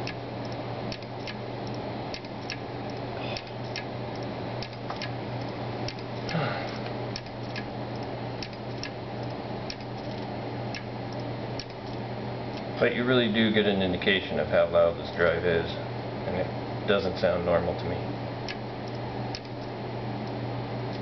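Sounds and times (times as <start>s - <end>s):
hard drive clicking: 0.0s - 12.7s, 18.4s - 21.0s
hard drive humming: 0.0s - 21.0s.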